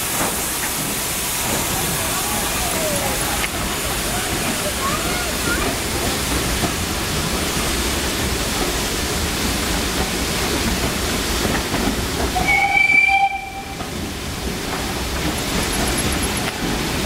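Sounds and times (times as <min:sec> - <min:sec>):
steam train running: 0:00.0 - 0:17.0
steam train whistle: 0:12.4 - 0:13.8.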